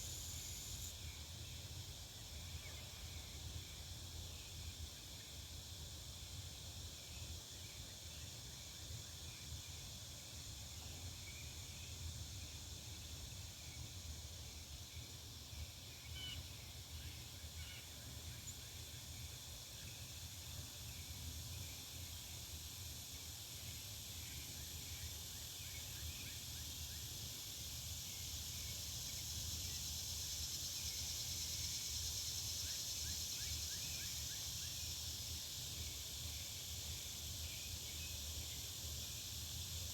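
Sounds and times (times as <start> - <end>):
insects hissing: 0.0 - 2.2, 21.5 - 39.9.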